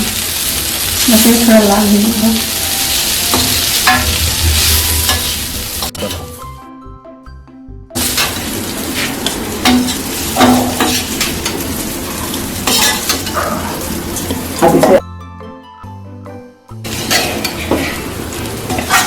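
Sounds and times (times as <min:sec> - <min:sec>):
food sizzling in a pan: 0:00.0 - 0:06.6, 0:08.0 - 0:15.0, 0:16.8 - 0:19.0
spoon scraping a pan: 0:08.0 - 0:15.0, 0:16.9 - 0:19.0.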